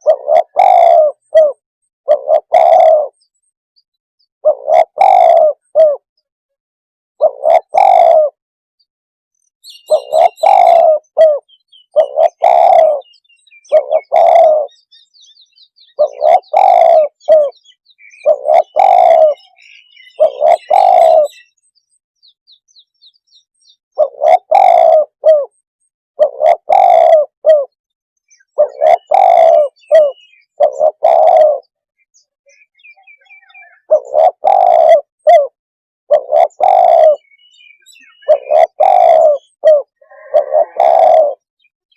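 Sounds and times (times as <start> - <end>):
dove cooing: 0.0 - 3.3, 4.4 - 6.1, 7.2 - 8.4, 9.7 - 15.0, 15.8 - 21.6, 24.0 - 25.6, 26.2 - 31.8, 32.8 - 41.5
faint high bird chirps: 9.4 - 35.5, 36.1 - 41.9.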